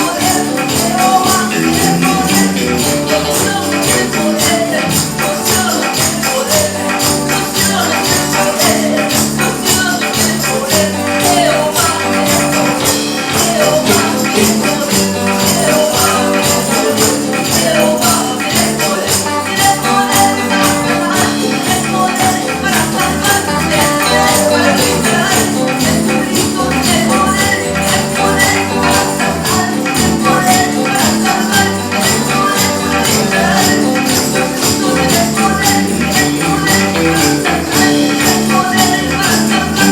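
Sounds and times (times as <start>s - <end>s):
band playing upbeat gospel song: 0.0s - 39.9s
fast percussion beat: 0.0s - 39.9s.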